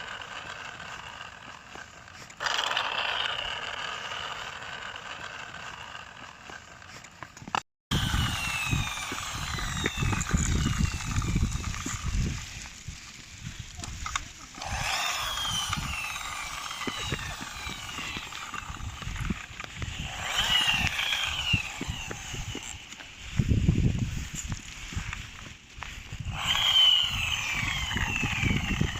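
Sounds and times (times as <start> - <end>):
toy car electric motor whining: 0.0 - 28.9
low rumble: 7.9 - 28.9.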